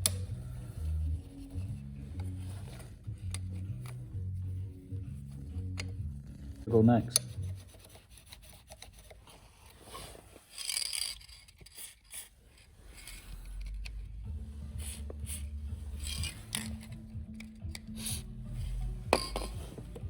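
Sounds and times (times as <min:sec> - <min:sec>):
metal tools scraping: 0:10.3 - 0:13.9
low steady hum: 0:13.0 - 0:20.0.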